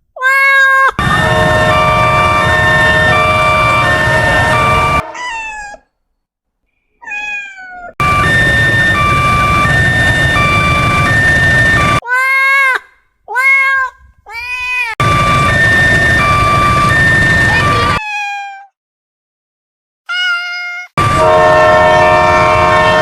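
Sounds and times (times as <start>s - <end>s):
cat meowing: 0.2s - 1.0s, 5.0s - 5.9s, 7.0s - 8.0s, 12.0s - 15.0s, 18.0s - 18.8s, 20.1s - 20.9s.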